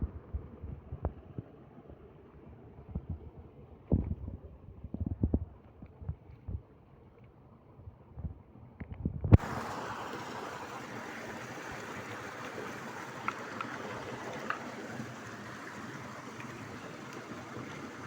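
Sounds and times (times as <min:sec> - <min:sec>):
flowing river water: 0:09.4 - 0:18.0
faint clicks: 0:11.9 - 0:15.4.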